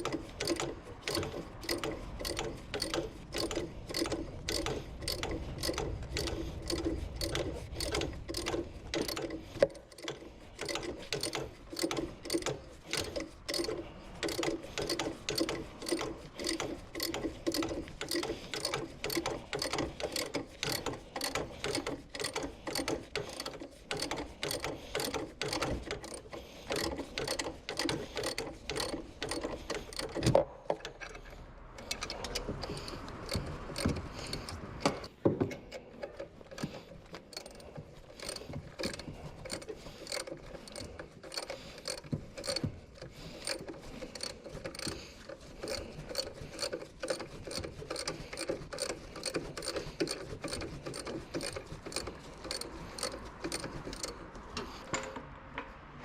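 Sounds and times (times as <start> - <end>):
ratchet wrench clicking: 0.0 - 35.1, 36.0 - 54.7.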